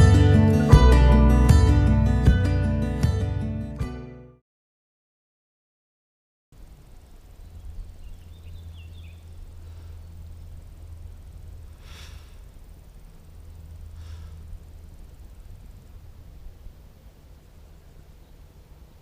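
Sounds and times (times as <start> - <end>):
faint bird chirps: 6.6 - 19.0
wind rumbling on microphone: 6.6 - 19.0
short hissy sounds: 11.7 - 12.6.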